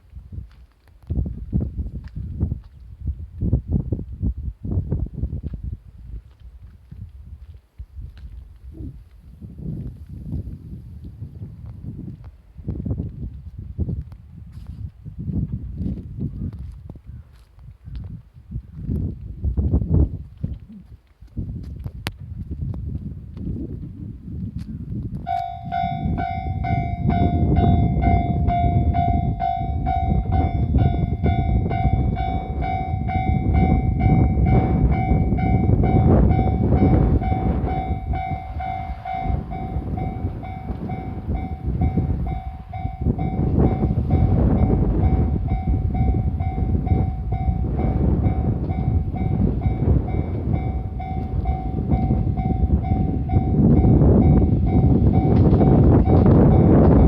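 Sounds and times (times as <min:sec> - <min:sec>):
diesel railcar passing: 0:25.2 - 0:57.0
level crossing bell ringing: 0:25.3 - 0:56.7.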